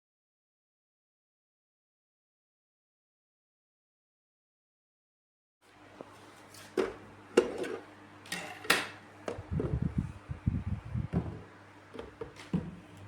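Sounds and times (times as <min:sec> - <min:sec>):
steady low hum: 0:09.0 - 0:13.0.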